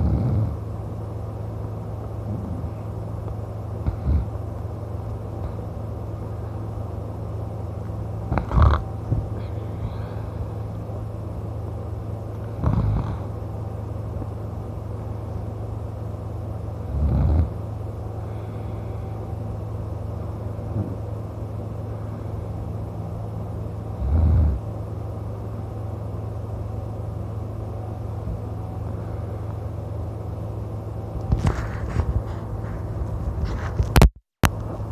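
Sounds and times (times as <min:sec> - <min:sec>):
man snoring: 0:00.0 - 0:00.6, 0:03.8 - 0:04.4, 0:08.3 - 0:10.1, 0:12.6 - 0:13.4, 0:16.8 - 0:17.6, 0:23.9 - 0:24.7
steady low hum: 0:00.0 - 0:34.9.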